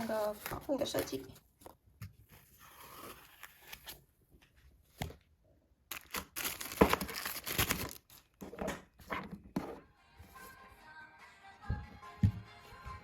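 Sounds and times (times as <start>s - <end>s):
wrapping crinkling and tearing: 5.9s - 8.4s.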